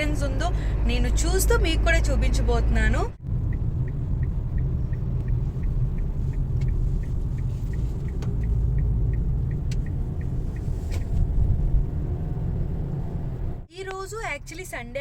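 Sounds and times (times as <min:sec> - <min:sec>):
car rumble from inside cabin: 0:00.0 - 0:15.0
light ticking: 0:03.2 - 0:11.6.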